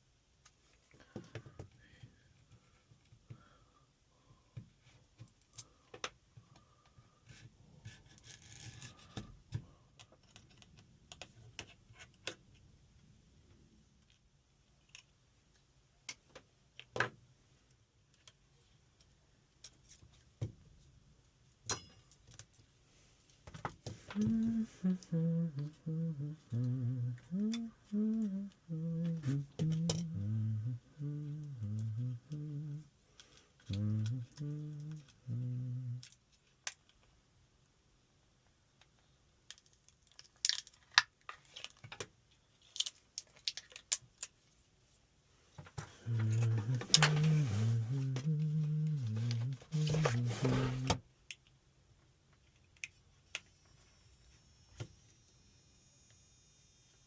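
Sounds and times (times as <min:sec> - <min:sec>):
man humming a tune: 0:24.1 - 0:32.9, 0:33.6 - 0:36.2, 0:45.9 - 0:51.0.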